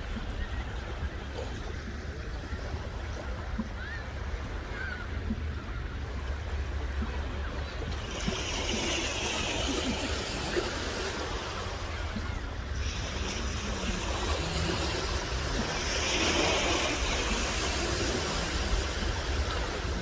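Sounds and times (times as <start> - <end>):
sea surf washing ashore: 0.0 - 20.0
faint short bird calls: 3.8 - 5.2.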